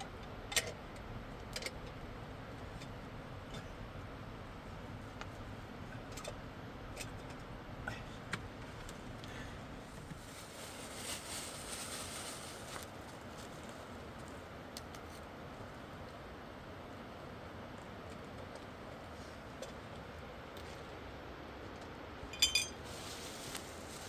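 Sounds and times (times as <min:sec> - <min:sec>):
hissing rustle: 0:09.8 - 0:13.7, 0:22.8 - 0:24.0.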